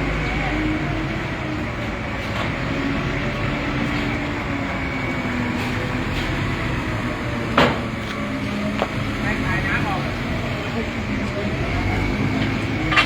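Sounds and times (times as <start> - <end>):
engine rumble: 0.0 - 13.0.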